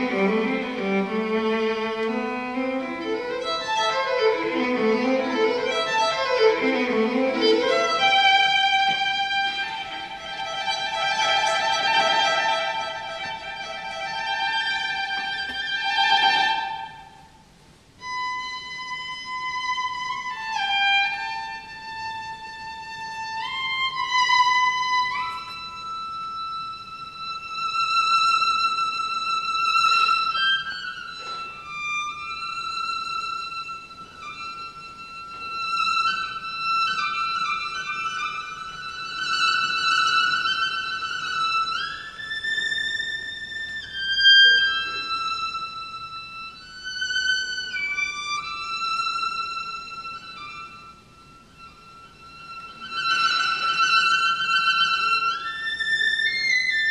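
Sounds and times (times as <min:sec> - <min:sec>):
solo violin melody: 0:00.0 - 0:17.4, 0:18.0 - 0:56.9.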